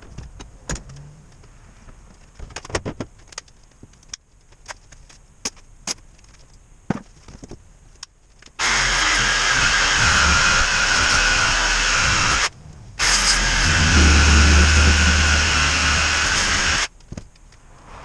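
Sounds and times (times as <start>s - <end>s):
power tool running: 8.6s - 16.9s.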